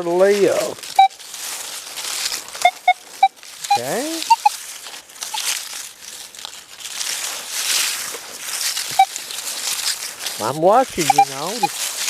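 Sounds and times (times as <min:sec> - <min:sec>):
rustling hiss: 0:00.0 - 0:12.0
metal detector beeps: 0:00.9 - 0:01.2, 0:02.6 - 0:04.6, 0:08.9 - 0:09.1, 0:10.4 - 0:11.8.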